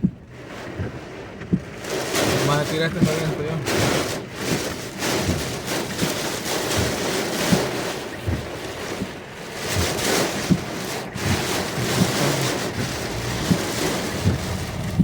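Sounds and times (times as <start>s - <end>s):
heavy rain and wind on car: 0.0s - 15.0s
dull thumps: 9.8s - 15.0s.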